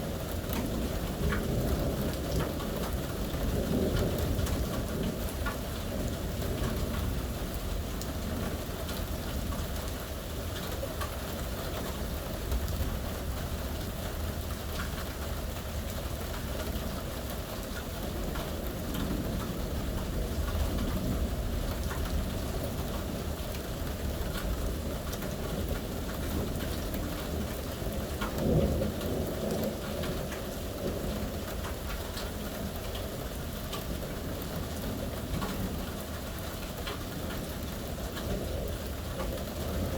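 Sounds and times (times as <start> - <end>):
low rumble of thunder: 0.0 - 39.9
steady rain falling: 0.0 - 39.9.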